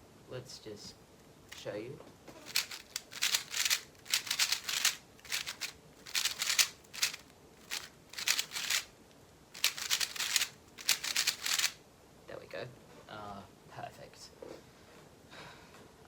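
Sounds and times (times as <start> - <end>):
puzzle cube layers clattering: 2.4 - 8.9, 9.6 - 11.8.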